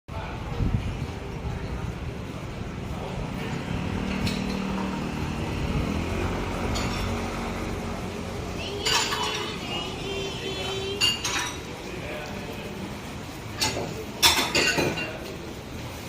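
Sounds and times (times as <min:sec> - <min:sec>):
steady background noise: 0:00.1 - 0:16.0
tableware clinking: 0:04.0 - 0:05.0, 0:06.6 - 0:07.5, 0:08.7 - 0:09.8, 0:10.7 - 0:11.8, 0:13.5 - 0:15.4.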